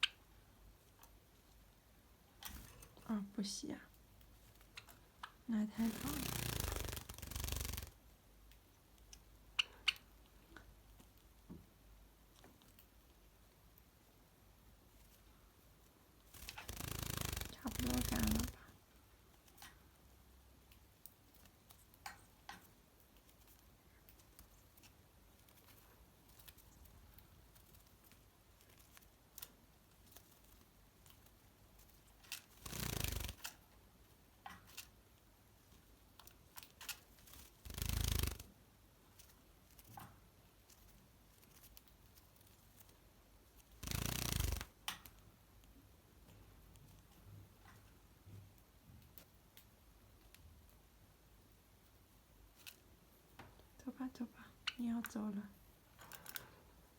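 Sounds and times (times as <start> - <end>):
bird rustling wings and feathers: 2.3 - 3.1, 5.7 - 8.6, 14.8 - 20.0, 20.6 - 53.6, 55.8 - 56.9.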